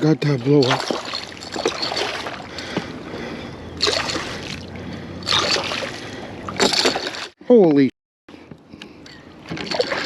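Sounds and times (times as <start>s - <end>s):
water sloshing around a kayak: 0.3s - 7.4s, 9.4s - 10.0s.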